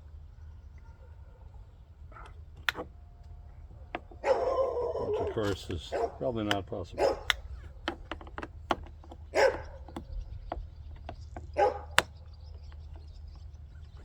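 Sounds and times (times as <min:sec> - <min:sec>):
dog barking: 0:00.8 - 0:01.5, 0:04.2 - 0:06.3, 0:06.9 - 0:07.4, 0:09.3 - 0:09.9, 0:11.6 - 0:12.0
light clicks and taps: 0:02.1 - 0:04.6, 0:05.2 - 0:14.0.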